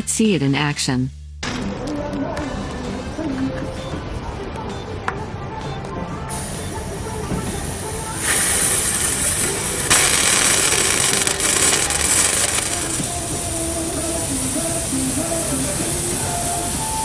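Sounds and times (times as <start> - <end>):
gas hissing through tyre valve: 6.2 - 17.0.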